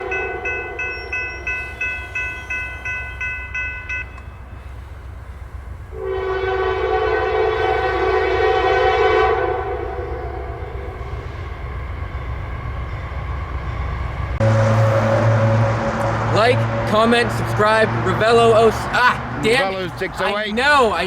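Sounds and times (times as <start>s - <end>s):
locomotive air horn: 0.0s - 2.7s, 5.9s - 11.8s, 14.4s - 20.3s
locomotive bell ringing: 0.0s - 4.9s, 14.0s - 21.0s
low diesel rumble: 13.4s - 21.0s.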